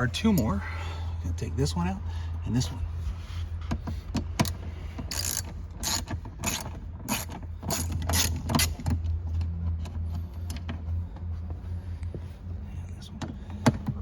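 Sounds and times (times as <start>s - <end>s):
ratchet clicking: 4.4s - 9.1s.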